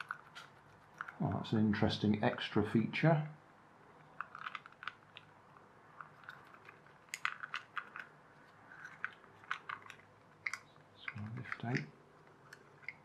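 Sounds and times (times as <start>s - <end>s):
plastic toy parts clicking: 0.0s - 1.2s, 4.0s - 13.0s.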